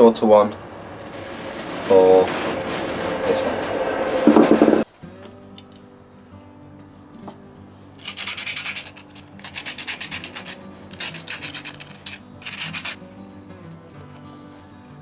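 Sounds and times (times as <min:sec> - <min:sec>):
rubbing with an abrasive: 0:01.0 - 0:04.8, 0:08.0 - 0:13.0.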